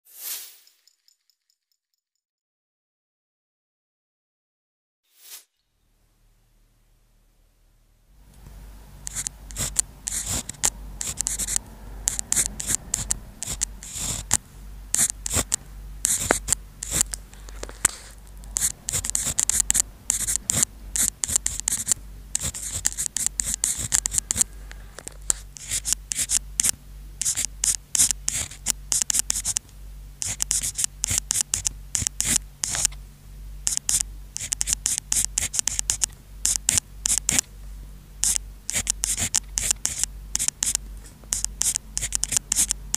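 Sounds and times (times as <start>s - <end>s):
pen scratching on paper: 9.0s - 29.6s, 30.2s - 32.9s, 33.6s - 37.4s, 38.2s - 42.8s.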